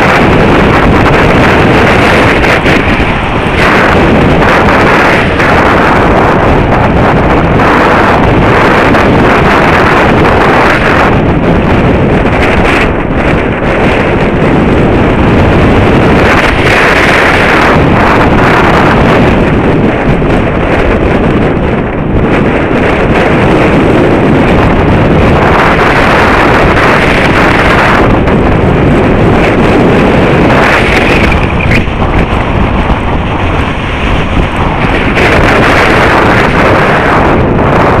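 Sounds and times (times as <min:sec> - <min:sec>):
wind buffeting microphone: 0:00.0 - 0:38.0.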